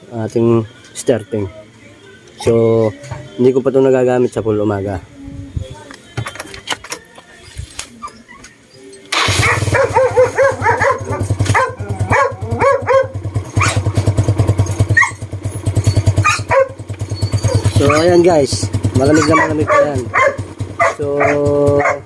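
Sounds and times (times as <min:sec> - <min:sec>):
motorcycle engine starting and idling: 0:09.1 - 0:22.0
dog barking: 0:09.3 - 0:14.0, 0:14.9 - 0:15.3, 0:16.1 - 0:18.2, 0:19.0 - 0:22.0.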